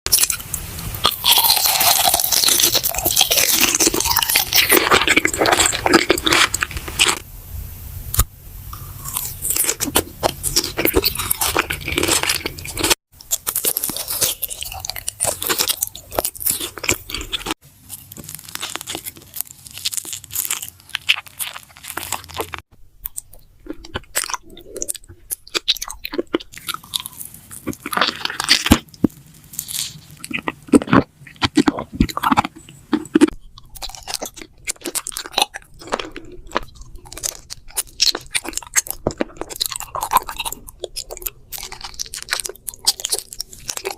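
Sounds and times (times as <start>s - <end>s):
paper crunching and crinkling: 9.5s - 22.6s.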